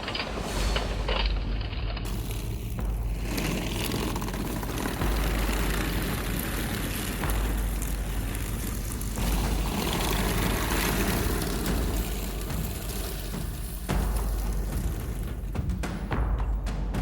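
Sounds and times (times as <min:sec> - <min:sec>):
low rumble: 0:00.0 - 0:16.2
toy tank motors and tracks running: 0:02.1 - 0:15.5.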